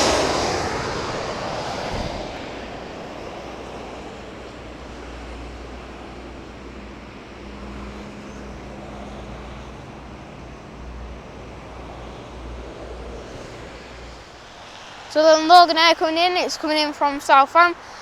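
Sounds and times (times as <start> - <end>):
jet engines roaring: 0.0 - 18.0
wind buffeting microphone: 0.0 - 18.0.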